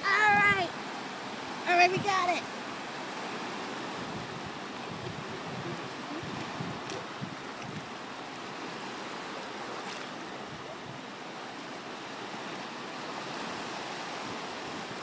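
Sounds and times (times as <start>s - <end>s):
surf washing on sandy beach: 0.0s - 15.0s.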